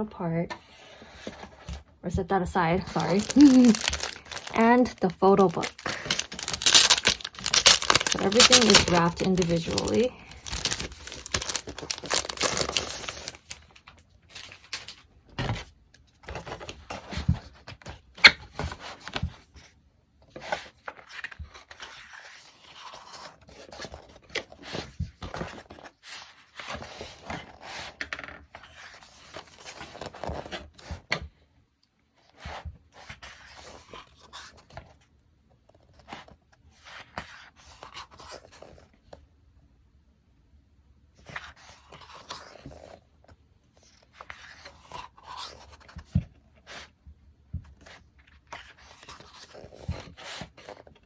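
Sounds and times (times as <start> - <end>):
packaging wrap rustling and tearing: 2.8 - 13.9.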